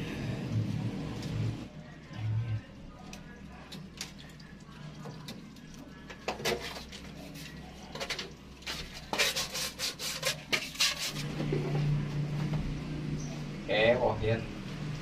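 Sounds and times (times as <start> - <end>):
hand scraping and rubbing: 8.8 - 11.3.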